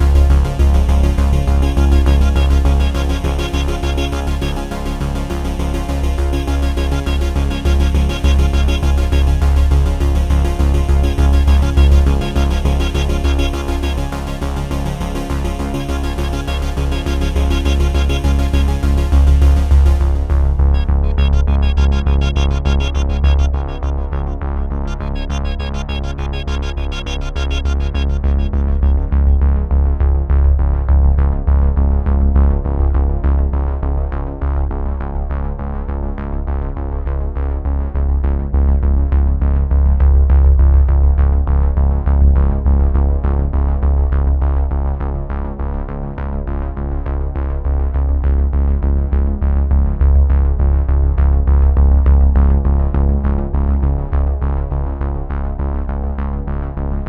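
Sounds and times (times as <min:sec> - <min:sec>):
electronic music with heavy bass: 0:00.0 - 0:30.4.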